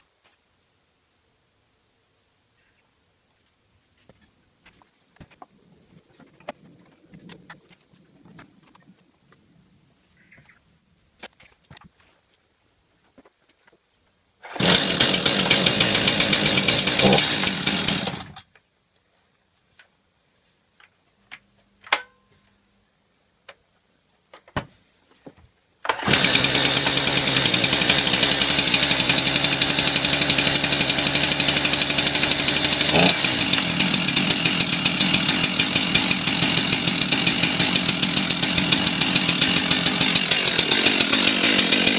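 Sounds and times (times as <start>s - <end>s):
chainsaw running: 14.5s - 18.4s, 25.9s - 41.9s.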